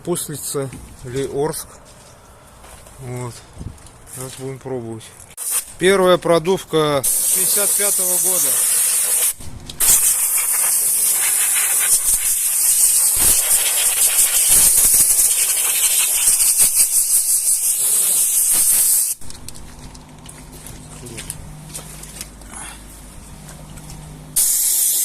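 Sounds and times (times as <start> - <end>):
gas hissing through pipes: 7.0 - 19.2, 24.3 - 25.0
low hum: 19.2 - 24.4.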